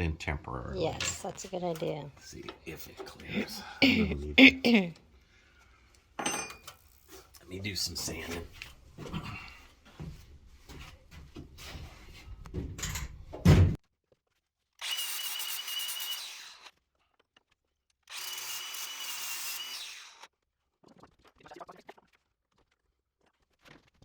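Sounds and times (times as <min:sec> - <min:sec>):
knocking and handling noises: 0:08.1 - 0:13.8
loud thump: 0:13.4 - 0:13.8.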